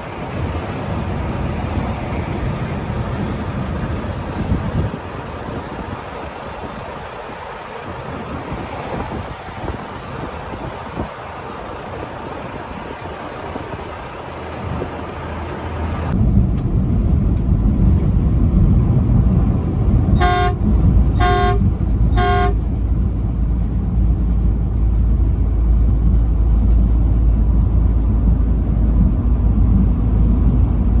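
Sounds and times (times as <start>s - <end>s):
moving truck rumble: 0.0s - 31.0s
truck horn blasts: 20.1s - 22.8s.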